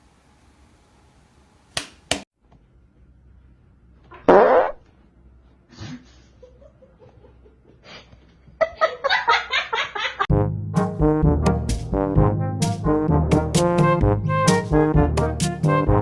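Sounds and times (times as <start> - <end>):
fart sound effect: 4.2 - 4.8
laughter: 5.7 - 10.3
comic brass tune: 10.3 - 16.0.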